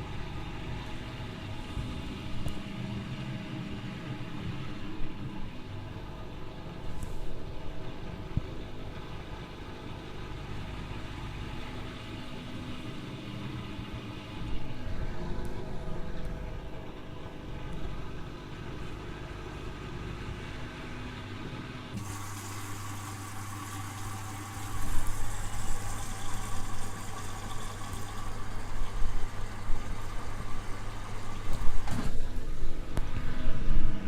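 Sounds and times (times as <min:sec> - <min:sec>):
washing machine humming: 0:00.0 - 0:34.0
water inlet buzz and hiss: 0:16.7 - 0:34.0.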